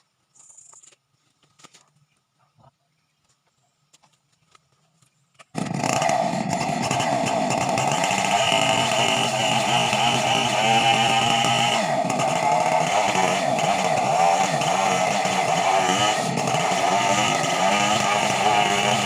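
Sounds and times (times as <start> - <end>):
chainsaw cutting wood: 5.4 - 19.0.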